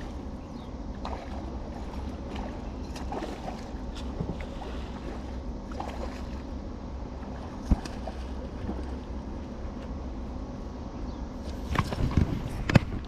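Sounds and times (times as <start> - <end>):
water noise: 0.0 - 10.8
low engine hum: 0.0 - 13.0.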